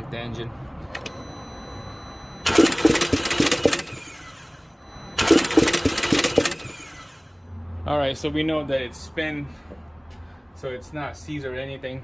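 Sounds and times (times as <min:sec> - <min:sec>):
car starter cranking: 0:02.4 - 0:07.4.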